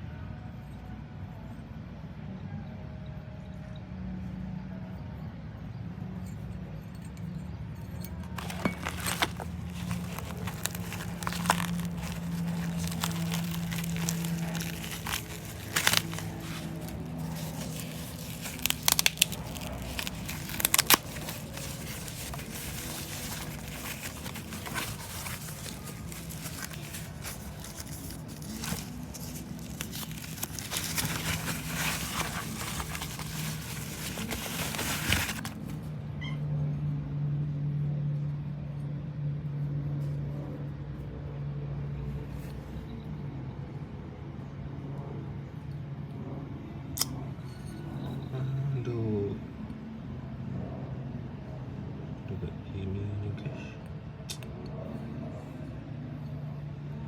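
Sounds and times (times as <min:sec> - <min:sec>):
plastic packaging crinkling: 0:08.2 - 0:35.9
sharp crackles and clicks: 0:08.3 - 0:35.7.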